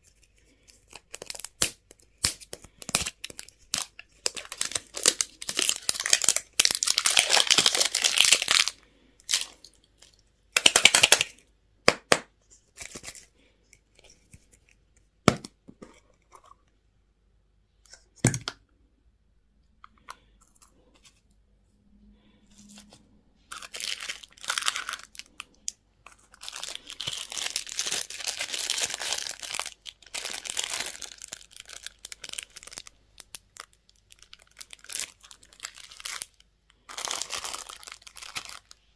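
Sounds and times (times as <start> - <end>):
candy wrappers crinkling: 0.0 - 11.4, 23.5 - 38.9.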